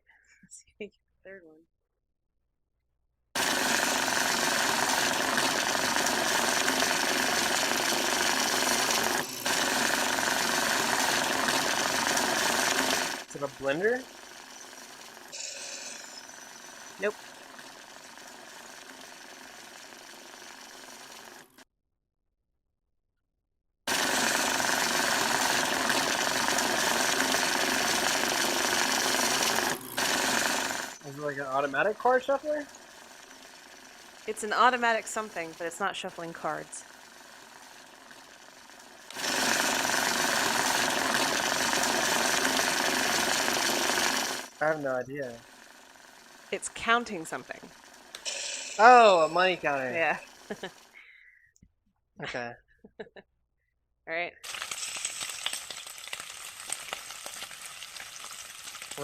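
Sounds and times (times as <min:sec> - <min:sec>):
banknote counting machine whirring: 0:03.4 - 0:21.6, 0:23.9 - 0:50.9, 0:54.4 - 0:56.0.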